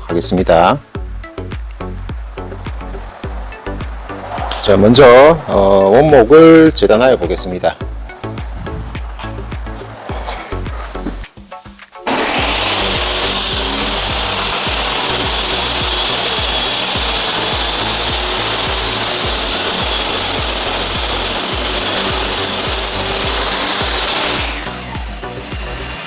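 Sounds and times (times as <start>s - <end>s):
power saw cutting wood: 12.1s - 26.0s.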